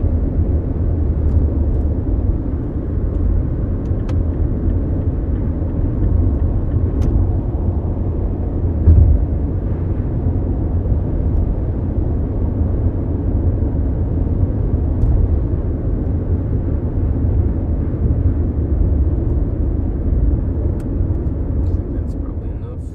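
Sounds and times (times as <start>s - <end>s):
road and engine rumble in car cabin: 0.0s - 22.9s
car bump: 8.8s - 9.3s.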